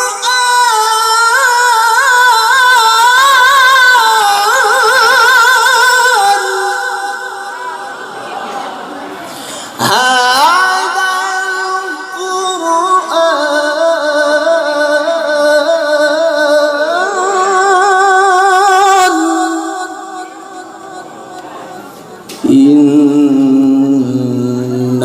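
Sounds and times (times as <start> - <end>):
man chanting melismatic recitation: 9.8 - 25.0.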